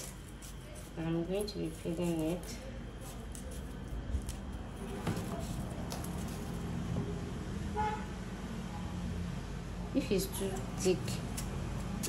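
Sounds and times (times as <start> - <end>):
road traffic rumble: 3.7 - 12.0
vehicle horn toot: 7.7 - 8.2.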